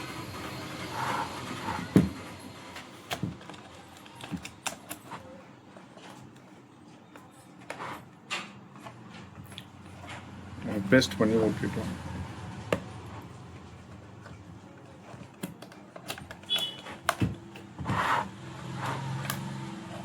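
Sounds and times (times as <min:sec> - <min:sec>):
hard objects clicking and knocking: 0:01.7 - 0:05.4, 0:12.6 - 0:20.0.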